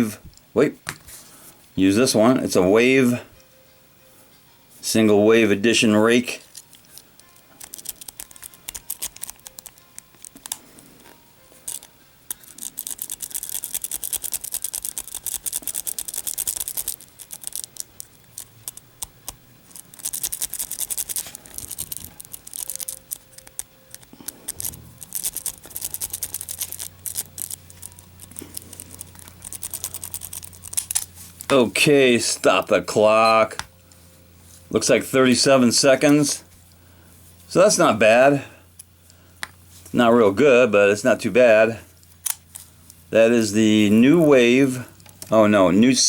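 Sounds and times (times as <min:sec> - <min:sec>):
lock pick scratching and clicking: 0:06.6 - 0:10.6, 0:11.7 - 0:31.6.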